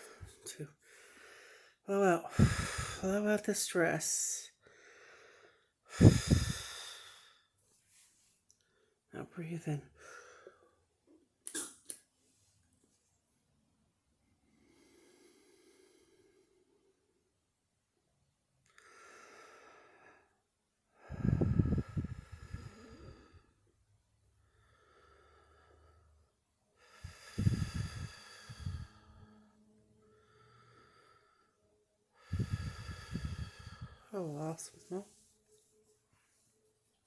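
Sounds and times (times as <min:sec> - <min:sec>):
breath in: 0:00.9 - 0:03.0, 0:04.7 - 0:07.5, 0:26.8 - 0:29.3, 0:32.2 - 0:34.1.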